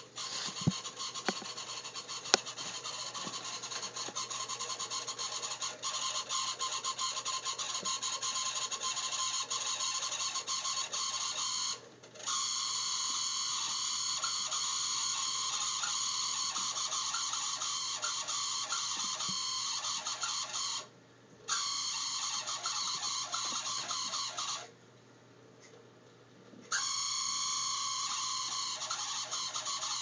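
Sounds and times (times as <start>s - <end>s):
heater high-pitched fluttering noise: 0.0s - 20.9s, 21.5s - 24.7s, 26.7s - 30.0s
sharp clicks: 0.5s - 4.2s.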